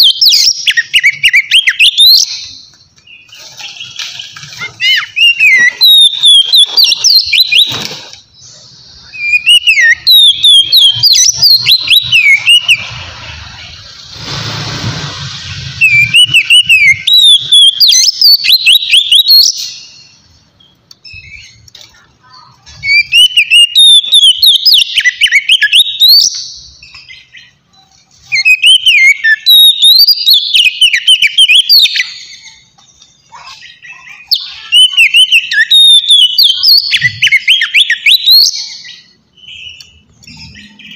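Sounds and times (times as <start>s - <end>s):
magpie-robin whistled song: 0.0s - 13.7s, 15.8s - 21.8s, 22.7s - 40.9s.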